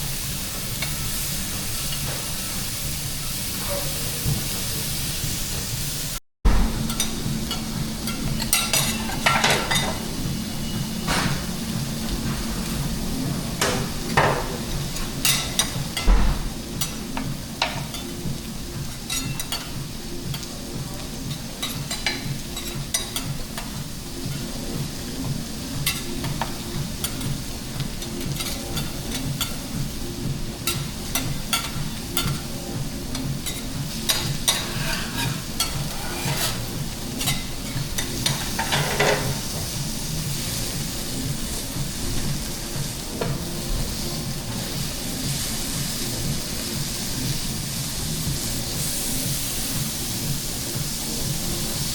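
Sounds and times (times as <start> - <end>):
food sizzling on griddle: 0.0 - 51.9
metal spatulas scraping steel: 33.4 - 39.3.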